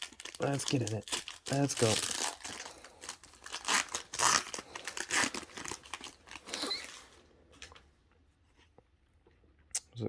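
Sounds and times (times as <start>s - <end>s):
foil wrapper tearing and crinkling: 0.0s - 7.2s.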